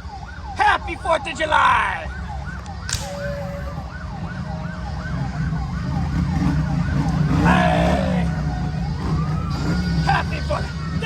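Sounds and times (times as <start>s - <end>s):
siren yelping: 0.0s - 11.0s
vehicle engine rumble: 0.0s - 11.0s.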